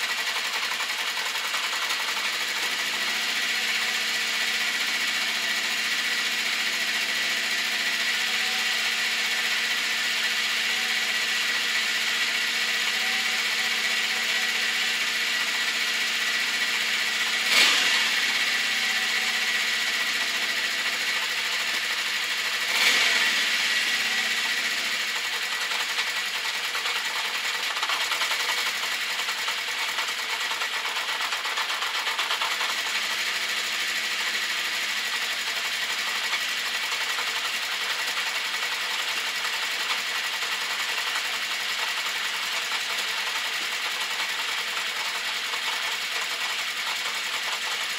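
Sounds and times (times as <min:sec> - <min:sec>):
rapid valve clicking: 0:00.0 - 0:02.4, 0:25.1 - 0:32.9, 0:36.2 - 0:47.9
motorcycle engine idling: 0:00.0 - 0:47.9.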